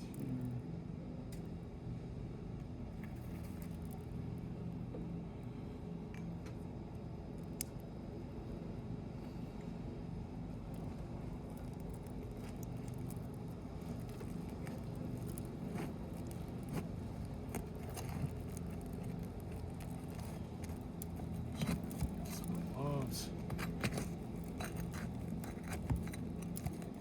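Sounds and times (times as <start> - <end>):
scrapes and clicks on shingles: 11.7 - 27.0.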